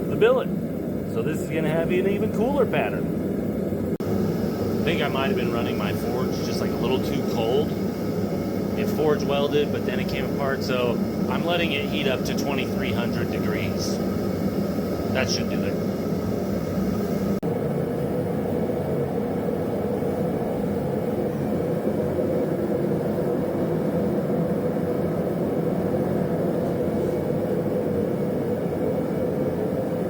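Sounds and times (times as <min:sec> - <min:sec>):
forge roaring: 0:00.0 - 0:30.0
low hum: 0:00.0 - 0:30.0.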